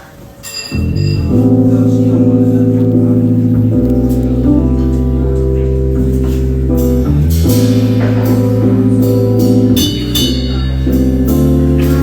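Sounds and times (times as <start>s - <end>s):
live band playing: 1.2s - 12.0s
drums: 3.7s - 12.0s.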